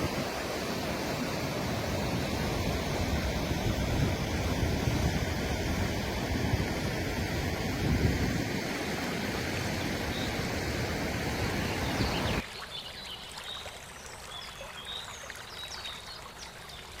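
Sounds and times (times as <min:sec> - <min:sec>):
river water rushing: 0:00.0 - 0:12.8
water flowing: 0:00.0 - 0:17.0.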